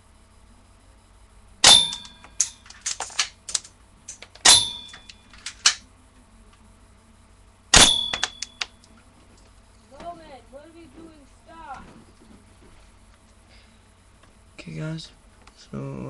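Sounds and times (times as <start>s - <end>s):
airsoft pistol shots: 1.6s - 2.2s, 4.4s - 4.9s, 7.7s - 8.4s.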